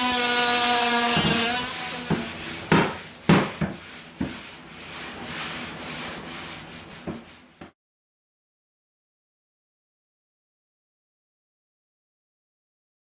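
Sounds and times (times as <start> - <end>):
scraping on wood: 0.0 - 7.7
sharp knocks: 1.1 - 4.4.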